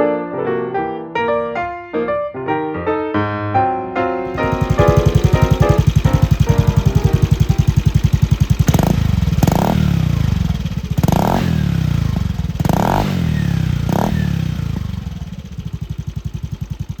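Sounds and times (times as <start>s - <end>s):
scooter engine idling and revving: 4.2s - 17.0s.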